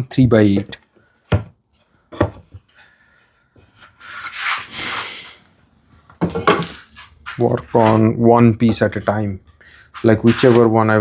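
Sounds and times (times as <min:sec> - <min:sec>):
wood sliding across wood: 0:06.2 - 0:08.1, 0:09.9 - 0:10.7.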